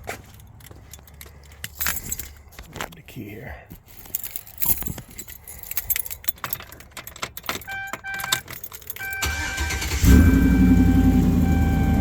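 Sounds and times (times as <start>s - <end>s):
car keys jangling: 0.2s - 3.0s, 3.8s - 10.0s
dashboard warning chime: 7.5s - 12.0s
starter motor cranking: 9.2s - 10.6s
car engine running loudly: 9.6s - 12.0s.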